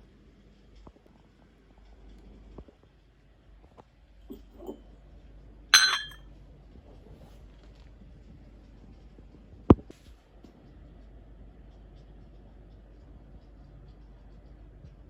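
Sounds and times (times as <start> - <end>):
hard object clinking: 5.8 - 6.2.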